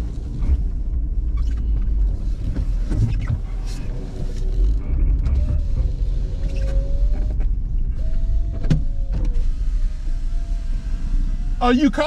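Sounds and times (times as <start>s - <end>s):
low rumble of car cabin: 0.0s - 12.0s
power window motor whining: 4.4s - 11.7s.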